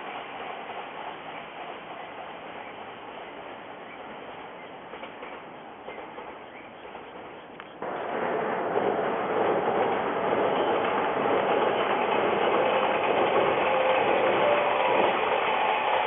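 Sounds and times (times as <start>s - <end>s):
electric train running past: 0.0s - 16.0s.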